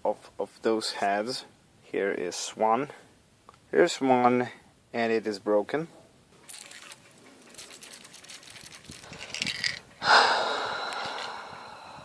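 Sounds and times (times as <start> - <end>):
handling clicks and rattles: 6.4 - 9.9.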